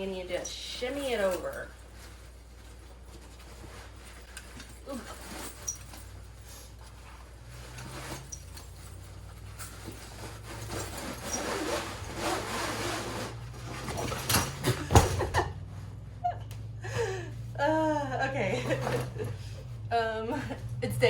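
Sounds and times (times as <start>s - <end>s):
rubbing and scraping of metal parts: 0.0s - 14.9s.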